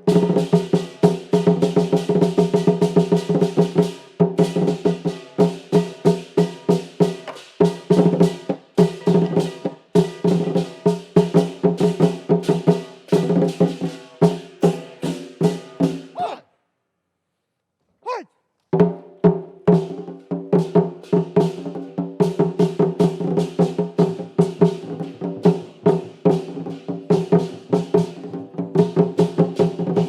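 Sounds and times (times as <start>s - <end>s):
percussion ensemble playing: 0.0s - 16.1s, 18.8s - 30.0s.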